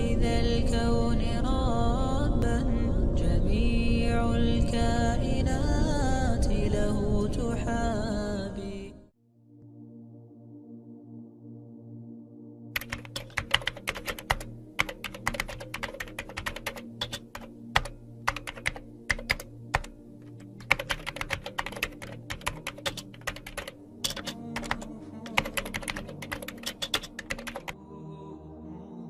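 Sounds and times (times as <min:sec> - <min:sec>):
soft background music: 0:00.0 - 0:29.0
keyboard typing clicks: 0:12.8 - 0:27.7.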